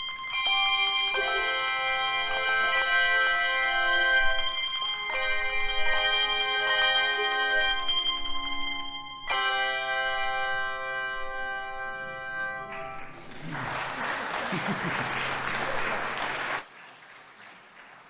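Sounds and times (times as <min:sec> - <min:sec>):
handbell choir ringing chords: 0:00.0 - 0:16.6
applause: 0:12.6 - 0:18.0.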